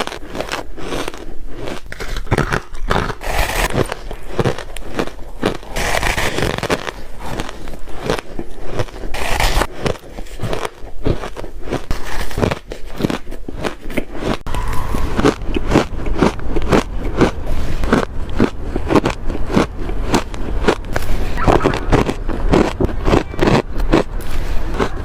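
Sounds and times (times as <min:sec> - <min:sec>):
ice cubes crunched between teeth: 0:00.0 - 0:14.4.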